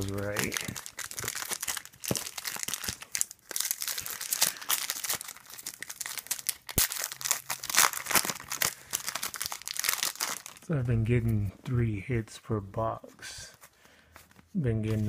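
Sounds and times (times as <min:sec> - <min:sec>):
foil wrapper tearing and crinkling: 0:00.0 - 0:10.7.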